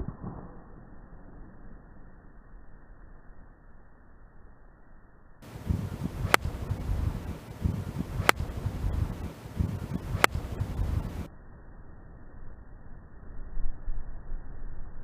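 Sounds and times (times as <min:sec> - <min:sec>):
low rumbling noise: 0:00.0 - 0:15.0
sharp clicks: 0:06.2 - 0:11.3.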